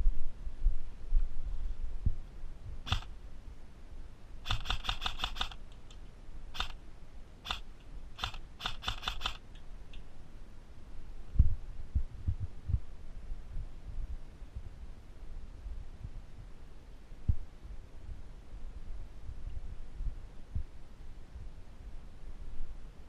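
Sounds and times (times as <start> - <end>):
dull low thumps: 0.0 - 3.0, 11.3 - 12.9
airsoft gun snapping shots: 2.9 - 3.1, 4.4 - 6.0, 6.6 - 6.8, 7.5 - 9.4.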